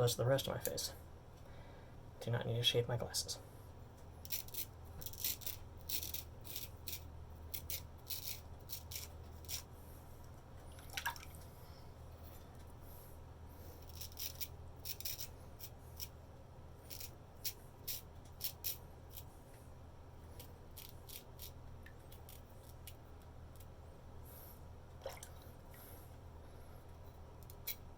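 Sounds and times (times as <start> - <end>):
low steady hum: 0.0 - 27.9
razor scraping stubble: 4.2 - 9.7, 13.6 - 16.2, 16.8 - 19.4, 20.3 - 23.0.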